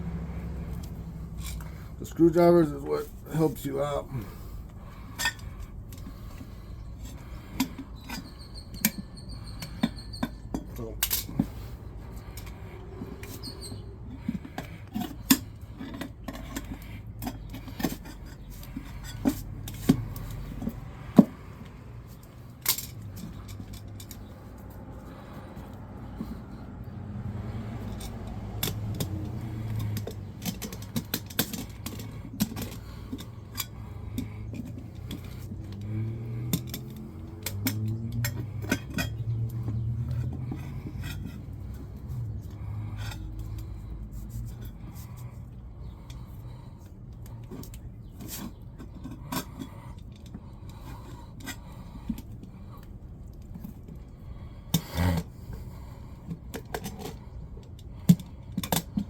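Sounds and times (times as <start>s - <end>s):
screwdrivers scraping a wheel rim: 0.0s - 59.0s
metallic clatter: 27.5s - 45.0s.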